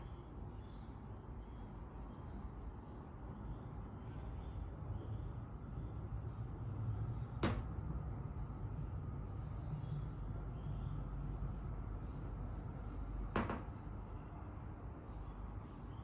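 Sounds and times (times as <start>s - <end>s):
low steady rumble: 3.5s - 15.8s
sharp knock: 13.4s - 13.7s.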